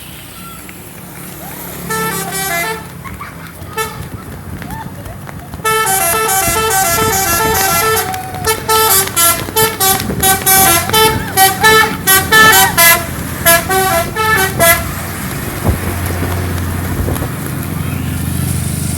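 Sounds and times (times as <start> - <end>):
musical air horn toots: 1.8 - 2.9, 5.6 - 15.0.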